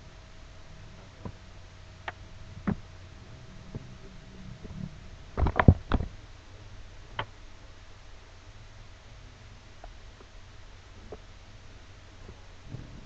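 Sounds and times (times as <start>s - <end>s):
faint low rumble: 0.0s - 13.0s
faint steady hum: 0.0s - 13.0s
sharp clicks and knocks: 2.0s - 2.8s, 5.4s - 6.2s.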